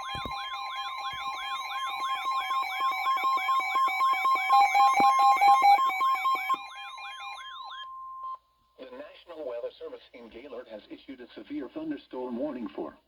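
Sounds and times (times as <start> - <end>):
electronic siren sweeping up and down: 0.0 - 7.8
steady attention tones: 0.0 - 8.4.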